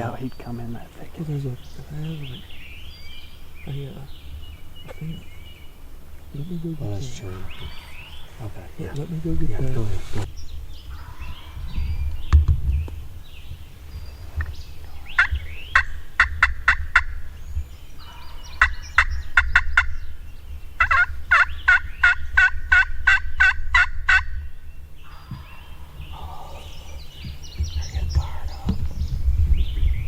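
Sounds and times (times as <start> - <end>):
turkey yelping: 14.8 - 17.3, 18.0 - 20.0, 20.8 - 24.4.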